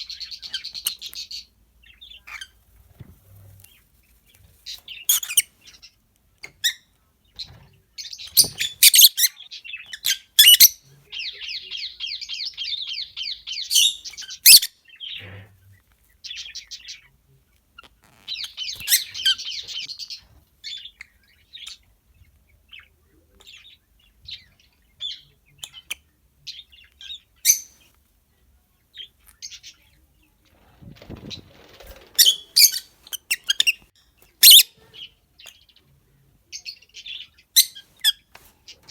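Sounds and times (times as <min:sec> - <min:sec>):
lovebirds chirping: 0:00.0 - 0:38.9
buzzy bird chattering: 0:04.8 - 0:05.5.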